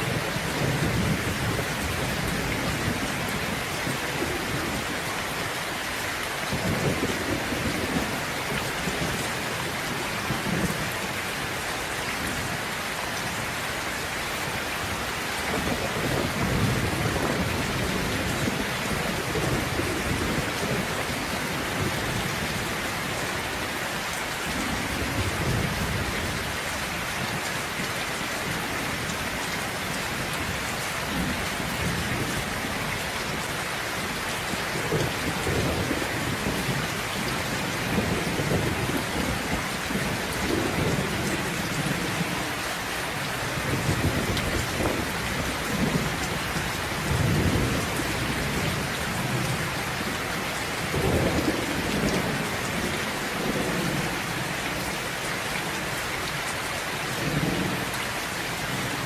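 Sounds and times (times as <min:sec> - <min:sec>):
heavy rain falling: 0:00.0 - 0:59.0
low thunder rumbling: 0:15.5 - 0:23.6, 0:34.7 - 0:42.4, 0:43.1 - 0:50.2.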